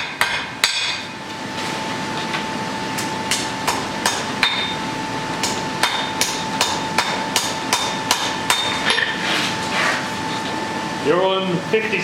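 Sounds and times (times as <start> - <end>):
hammer striking hot iron on anvil: 0.0 - 1.1, 3.3 - 4.8, 5.4 - 9.2.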